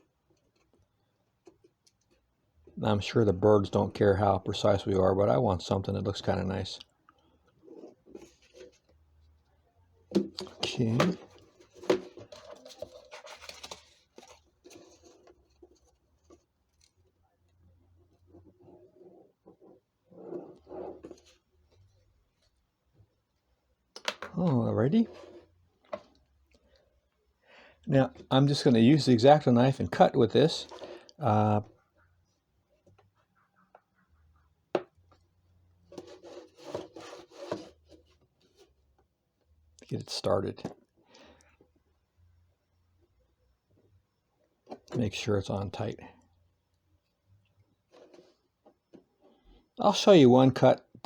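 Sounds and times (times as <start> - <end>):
scratchy rubbing: 17.8 - 21.9, 25.0 - 25.6, 35.9 - 38.7.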